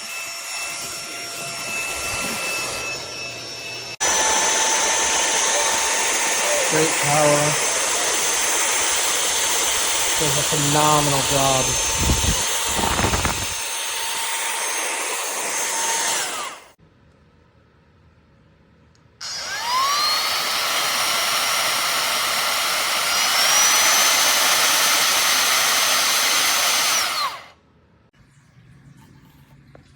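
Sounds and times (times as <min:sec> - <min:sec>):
handheld vacuum motor whine: 0:00.0 - 0:16.8, 0:19.2 - 0:27.6.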